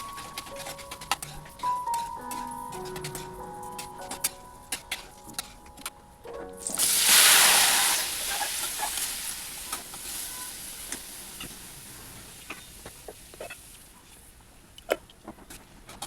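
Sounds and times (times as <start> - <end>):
hot oil sizzling: 6.6 - 14.0.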